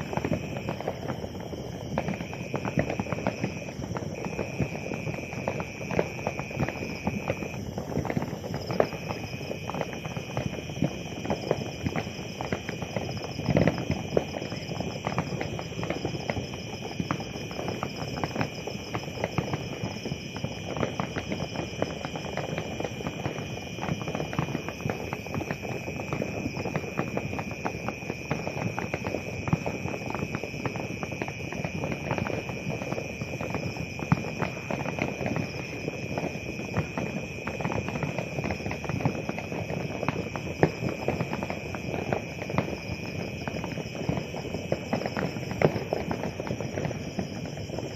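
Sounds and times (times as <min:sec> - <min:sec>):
fireworks crackling and banging: 0:00.0 - 0:47.9.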